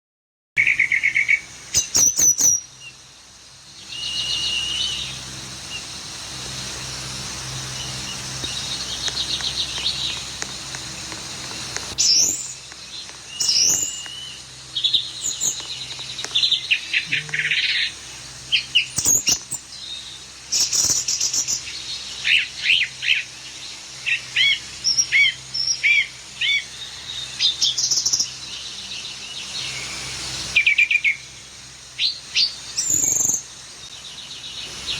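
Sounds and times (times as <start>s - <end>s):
bird chirping and trilling: 0.6s - 3.0s, 3.8s - 5.9s, 11.9s - 23.3s.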